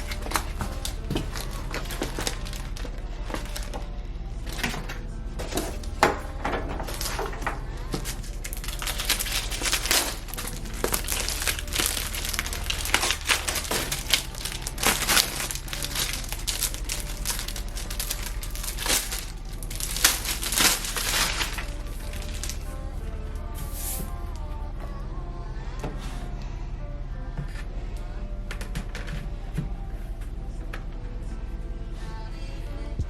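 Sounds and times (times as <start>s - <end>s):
packaging crinkling: 0.0s - 3.9s, 4.5s - 22.8s
soft background music: 0.0s - 33.0s.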